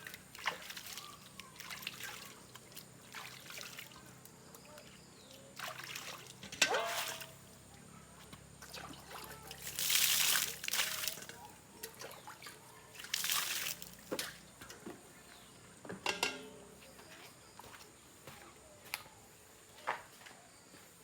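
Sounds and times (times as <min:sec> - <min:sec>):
water splashing and pouring: 0:00.0 - 0:04.0, 0:05.6 - 0:07.4, 0:08.6 - 0:11.3, 0:12.0 - 0:14.3.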